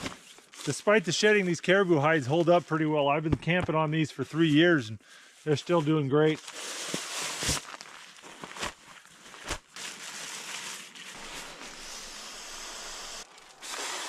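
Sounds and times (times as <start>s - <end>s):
rustling hiss: 10.2s - 14.0s.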